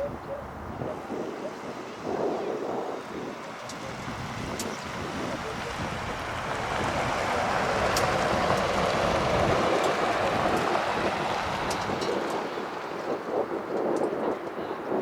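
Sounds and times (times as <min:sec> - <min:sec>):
jet engines rushing: 0:00.0 - 0:15.0.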